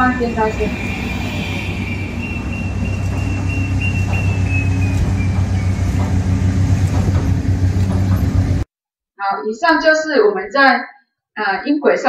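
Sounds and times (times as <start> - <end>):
high tone dropping in pitch: 0.0 - 5.8
train running hum: 0.0 - 8.7.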